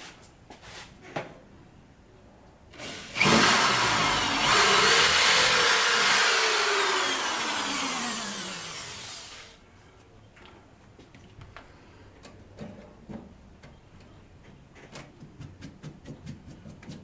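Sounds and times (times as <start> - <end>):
electric drill drilling: 2.8 - 9.6.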